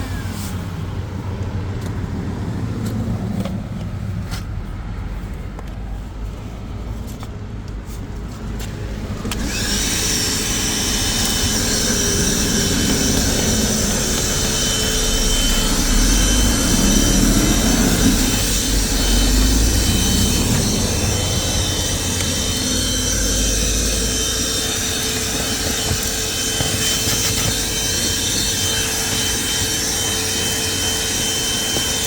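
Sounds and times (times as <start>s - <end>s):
handheld vacuum cleaner whining: 0.0s - 1.5s, 8.6s - 32.0s.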